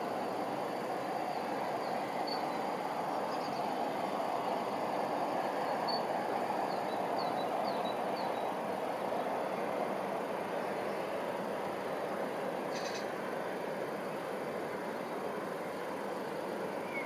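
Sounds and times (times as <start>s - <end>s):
distant city traffic hum: 0.0s - 17.0s
faint high bird chirps: 12.7s - 13.1s, 16.8s - 17.0s.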